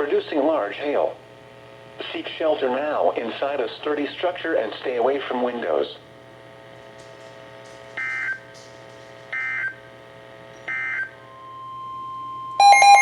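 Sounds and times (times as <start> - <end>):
steady tone: 10.7 - 13.0.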